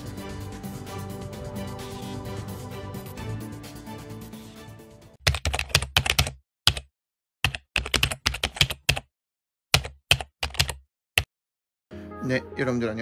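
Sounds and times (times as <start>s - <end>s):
background music: 0.0s - 5.2s, 11.9s - 13.0s
mechanical keyboard typing: 5.2s - 9.1s, 9.8s - 10.8s.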